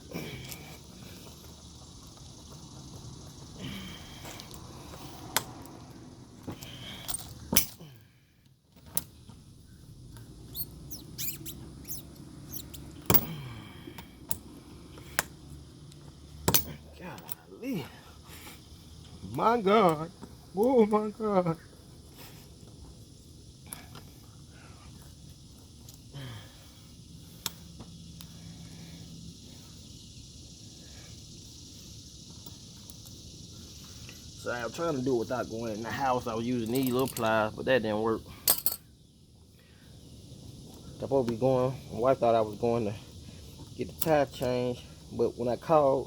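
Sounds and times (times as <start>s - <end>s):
crickets chirping: 0.0s - 46.0s
short high squeaks: 10.5s - 12.9s.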